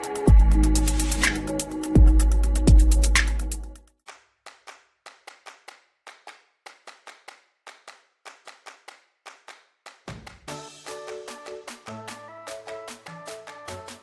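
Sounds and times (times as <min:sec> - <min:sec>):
bass-heavy electronic music: 0:00.0 - 0:03.8
clap-like percussion hits: 0:01.0 - 0:01.6, 0:02.8 - 0:14.0.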